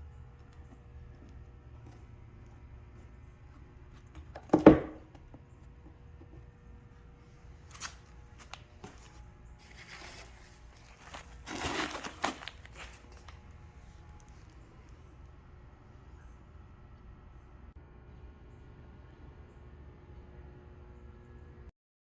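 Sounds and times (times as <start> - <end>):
rustling and crinkling: 5.6 - 15.2.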